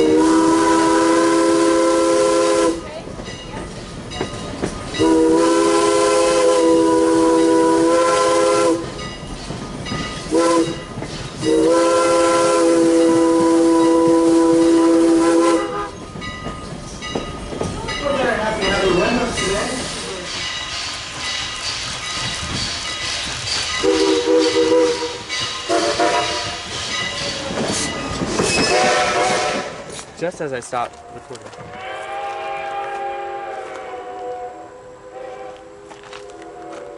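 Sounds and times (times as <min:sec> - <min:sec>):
steam locomotive chime whistle: 0:00.0 - 0:02.9, 0:05.0 - 0:09.2, 0:10.1 - 0:16.4, 0:23.7 - 0:27.4, 0:28.4 - 0:29.8, 0:31.8 - 0:36.9.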